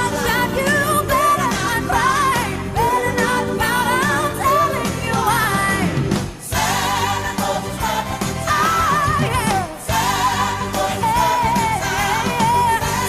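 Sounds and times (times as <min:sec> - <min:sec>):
pop song with band: 0:00.0 - 0:13.0.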